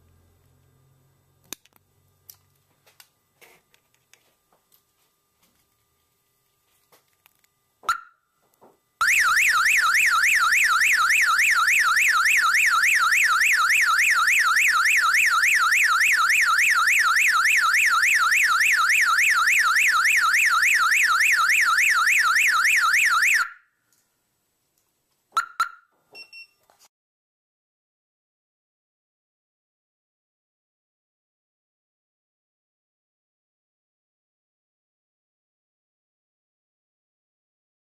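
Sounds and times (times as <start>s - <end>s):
car alarm chirp: 7.9s - 8.2s, 9.0s - 23.5s, 25.4s - 26.4s
car alarm siren wail: 9.0s - 23.6s.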